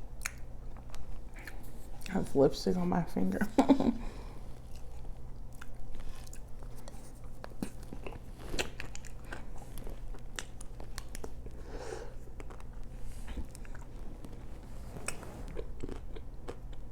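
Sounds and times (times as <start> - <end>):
faint low hum: 0.0 - 16.9
chocolate coating crunching: 4.5 - 16.9.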